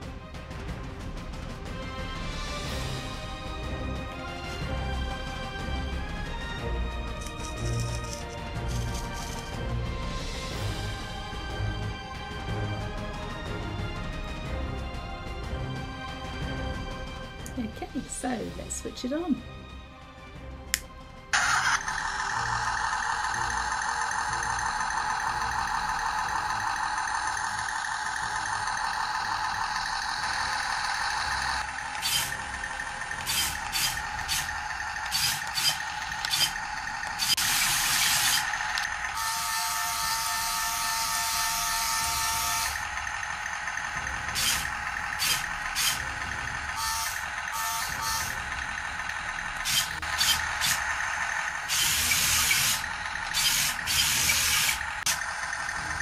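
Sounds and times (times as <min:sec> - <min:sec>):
toy tank buzzy engine sound: 0:07.2 - 0:09.6, 0:21.3 - 0:56.0
toy tank hissing bursts: 0:21.4 - 0:56.0.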